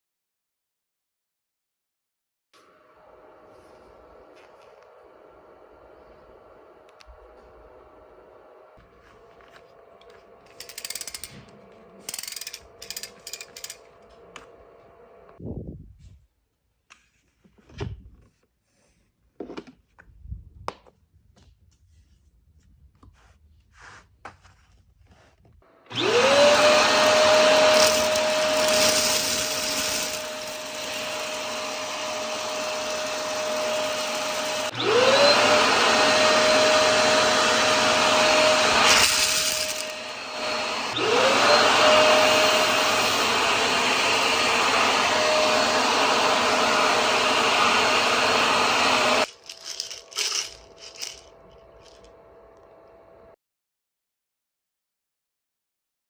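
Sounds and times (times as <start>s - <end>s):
vacuum cleaner motor whine: 2.6s - 15.4s, 25.7s - 53.4s.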